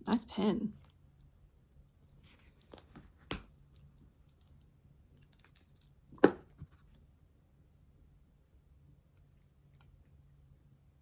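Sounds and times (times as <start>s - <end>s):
small objects clicking on a tabletop: 4.4s - 6.4s.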